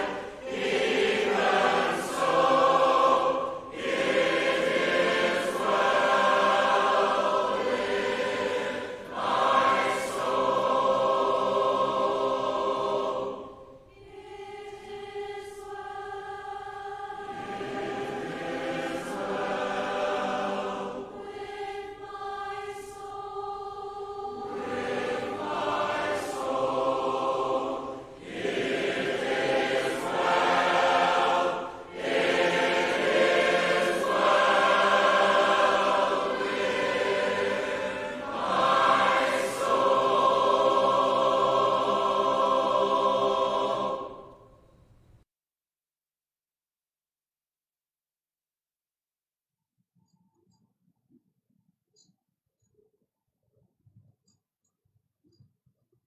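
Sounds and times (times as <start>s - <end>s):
congregation singing a hymn: 0.0s - 44.6s.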